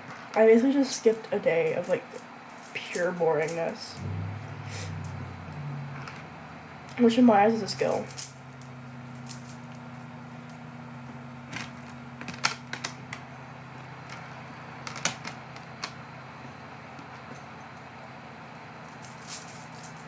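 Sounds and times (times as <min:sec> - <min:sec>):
low hum: 0:04.0 - 0:14.9
small objects clicking and tapping: 0:07.8 - 0:13.3, 0:14.0 - 0:16.0, 0:18.5 - 0:20.0.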